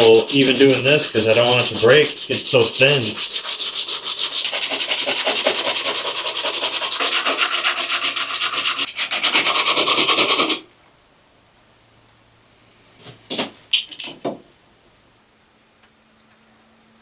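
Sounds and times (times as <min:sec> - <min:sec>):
quiet room noise: 0:00.0 - 0:06.3
sandpaper rubbing on wood: 0:00.0 - 0:10.6.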